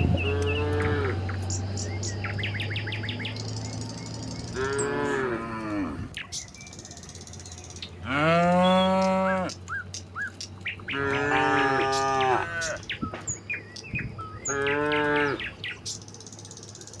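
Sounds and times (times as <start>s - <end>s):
small birds chirping: 0.0s - 17.0s
cattle mooing: 0.1s - 1.5s, 4.4s - 6.2s, 8.0s - 9.8s, 10.7s - 13.0s, 14.4s - 15.5s.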